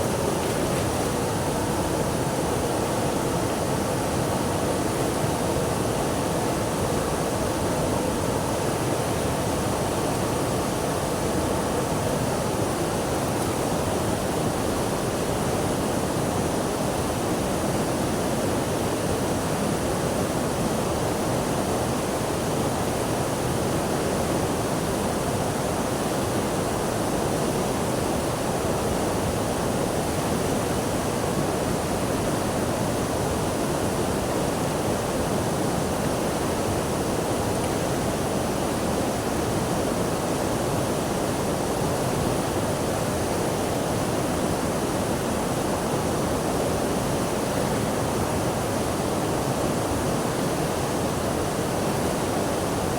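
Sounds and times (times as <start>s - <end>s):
rushing water: 0.0s - 7.7s.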